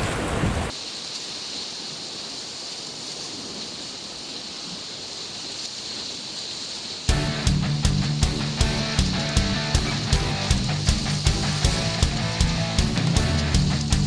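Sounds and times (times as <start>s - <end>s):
sea surf hissing: 0.0s - 13.6s
constant high-pitched tone: 7.1s - 14.0s.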